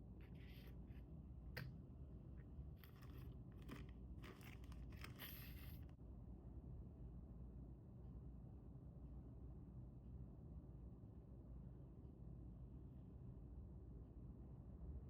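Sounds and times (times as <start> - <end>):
packaging rustling and crinkling: 2.8 - 5.9.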